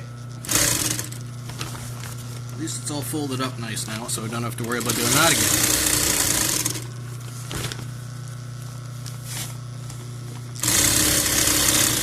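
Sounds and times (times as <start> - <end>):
sewing machine stitching: 0.4 - 1.2, 4.6 - 6.8, 10.6 - 12.0.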